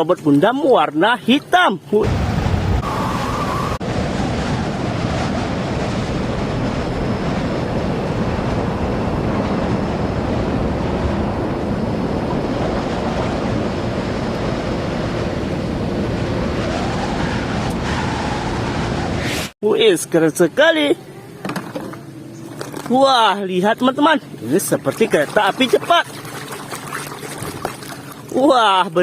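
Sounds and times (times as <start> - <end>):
water spraying: 22.4 - 28.8.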